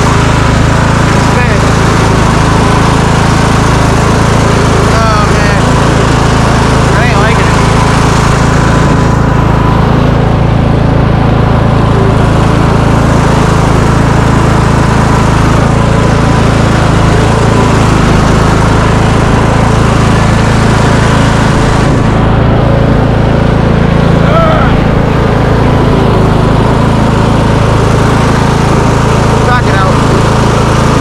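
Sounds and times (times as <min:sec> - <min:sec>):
lawn mower engine running: 0:00.0 - 0:31.0.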